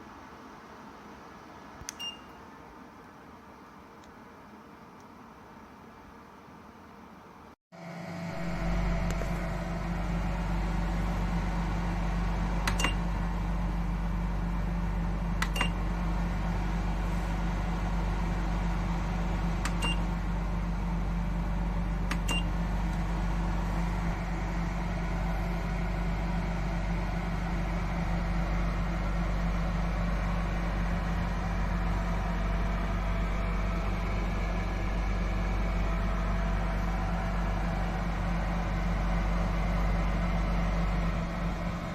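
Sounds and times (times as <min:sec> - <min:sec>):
fan heater humming: 0:00.0 - 0:41.9
short click-beeps: 0:01.9 - 0:02.4, 0:12.7 - 0:13.0, 0:15.4 - 0:15.8, 0:19.7 - 0:20.0, 0:22.1 - 0:22.5.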